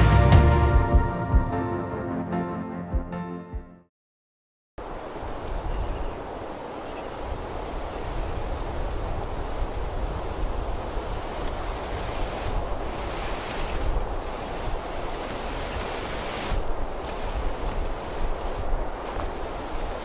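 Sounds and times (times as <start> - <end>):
wind blowing across microphone: 4.8 - 20.0.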